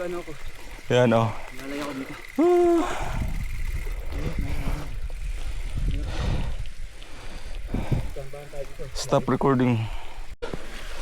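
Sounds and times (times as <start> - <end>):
wind rumble on camera: 2.9 - 8.2.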